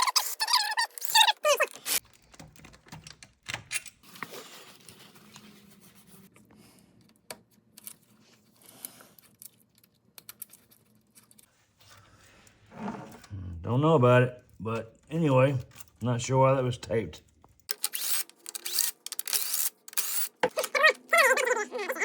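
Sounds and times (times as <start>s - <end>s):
hand tools and parts clicking: 8.8s - 11.5s, 17.2s - 21.0s.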